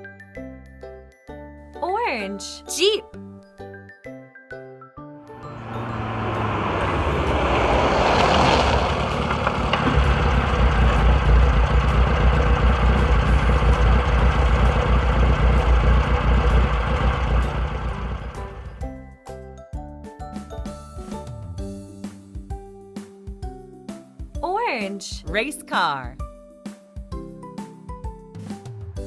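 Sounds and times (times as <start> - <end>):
deep engine running: 5.3 - 18.9.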